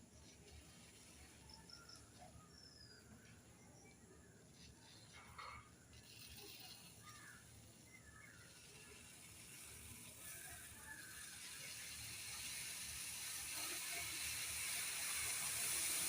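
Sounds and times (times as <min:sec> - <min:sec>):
milk hissing in a pan: 0:06.0 - 0:16.0.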